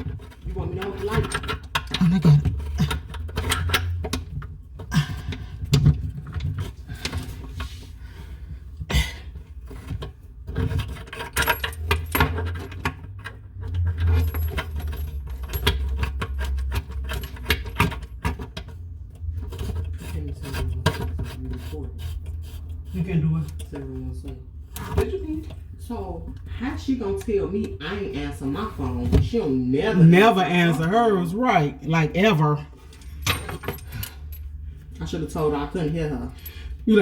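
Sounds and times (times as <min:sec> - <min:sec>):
metal plumbing parts clinking: 0:00.0 - 0:07.7, 0:09.2 - 0:21.4, 0:32.2 - 0:37.0.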